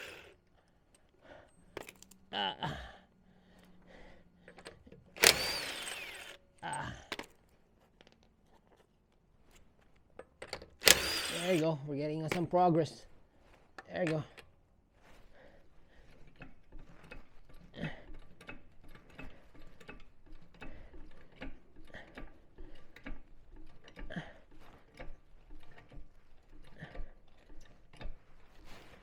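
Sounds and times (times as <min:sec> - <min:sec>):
car jack metallic clicks: 0:04.6 - 0:06.3, 0:10.4 - 0:11.6.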